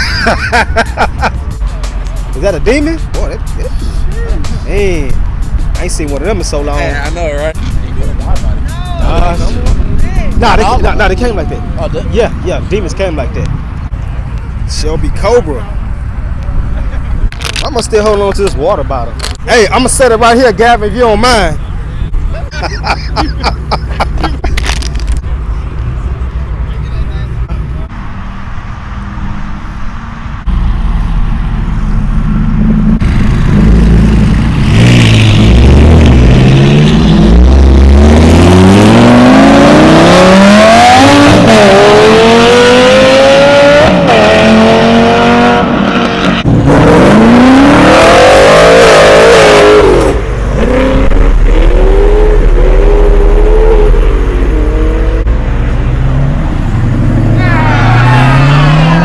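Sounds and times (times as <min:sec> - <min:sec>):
car engine accelerating hard: 0:28.8 - 0:59.0.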